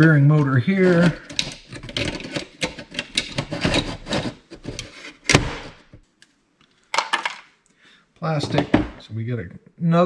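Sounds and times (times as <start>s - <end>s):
plastic and metal parts rattling: 0.7s - 6.0s, 6.9s - 7.5s.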